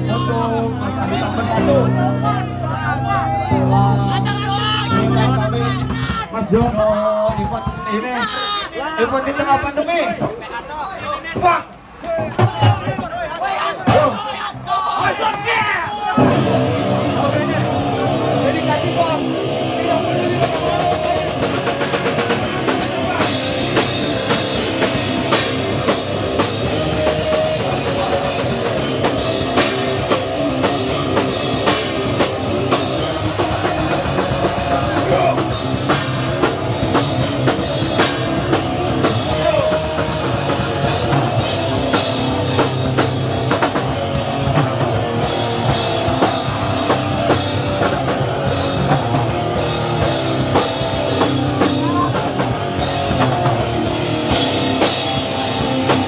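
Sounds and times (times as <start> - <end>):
bass guitar: 0.0 - 7.0, 16.2 - 56.0
distorted guitars: 0.0 - 7.7, 16.2 - 56.0
punk band playing live: 0.0 - 8.6, 11.4 - 13.2, 13.8 - 15.6, 16.2 - 56.0
fast hard-hit drum kit: 3.6 - 8.1, 16.2 - 56.0.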